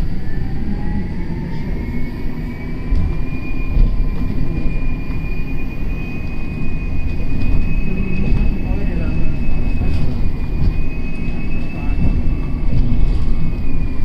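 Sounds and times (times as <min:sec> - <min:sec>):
bus accelerating with rising whine: 0:00.0 - 0:14.0.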